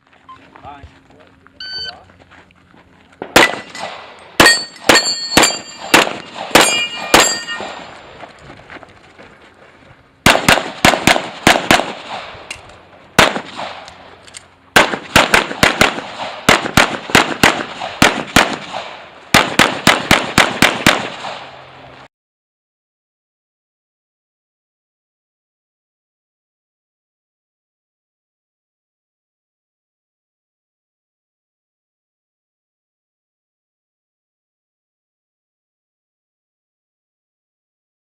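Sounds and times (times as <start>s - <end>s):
pistol shots: 3.2s - 7.9s, 10.2s - 14.0s, 14.7s - 21.7s
steel targets clanging: 3.4s - 7.9s.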